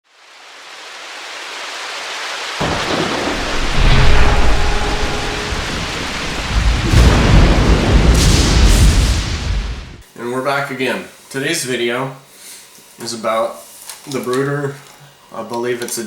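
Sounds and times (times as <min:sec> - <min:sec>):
rain hiss: 0:00.0 - 0:10.7
low thunder-like rumble: 0:02.6 - 0:10.0.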